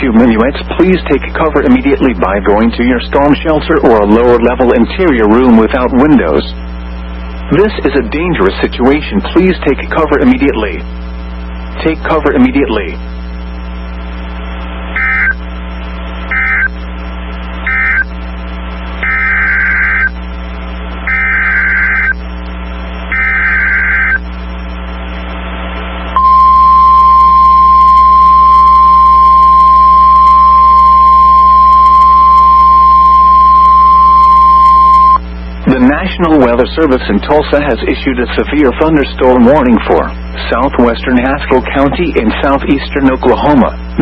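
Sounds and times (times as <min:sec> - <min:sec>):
buzzing data bursts: 0:00.0 - 0:35.9
electrical hum: 0:00.0 - 0:44.0
steady warning alarm tone: 0:15.0 - 0:15.4, 0:16.3 - 0:16.8, 0:17.6 - 0:18.1, 0:19.0 - 0:20.2, 0:21.0 - 0:22.2, 0:23.1 - 0:24.2, 0:26.2 - 0:35.2.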